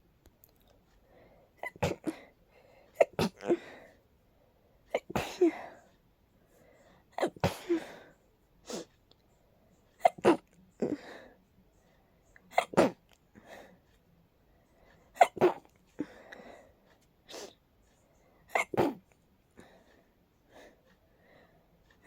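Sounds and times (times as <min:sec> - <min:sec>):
person sneezing: 0:03.0 - 0:03.7, 0:10.0 - 0:11.0, 0:12.5 - 0:13.0.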